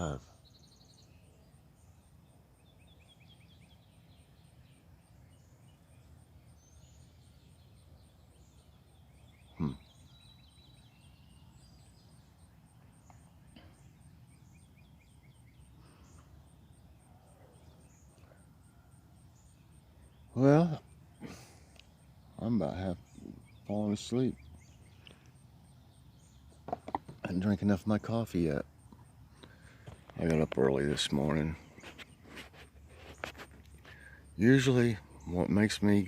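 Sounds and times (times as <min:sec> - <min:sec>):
songbirds chirping: 0:00.0 - 0:36.0.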